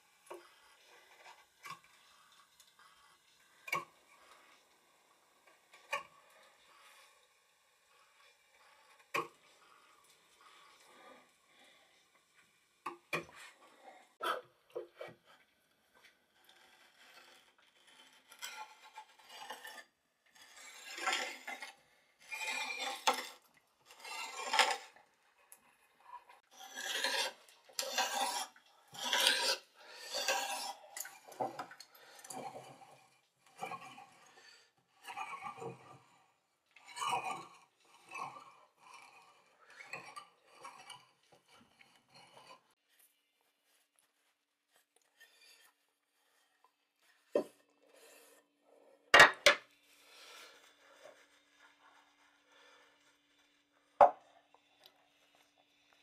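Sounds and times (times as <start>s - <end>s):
hand tool scraping wood: 26.5s - 31.6s.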